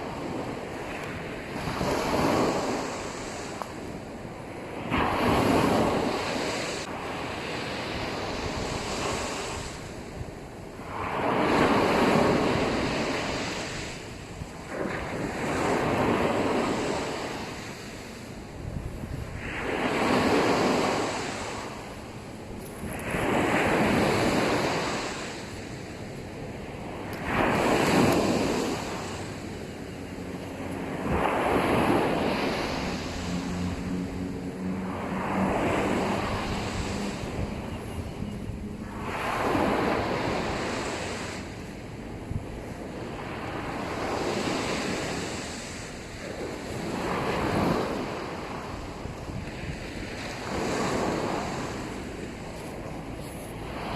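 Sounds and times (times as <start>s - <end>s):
sea waves breaking on beach: 0.0s - 53.9s.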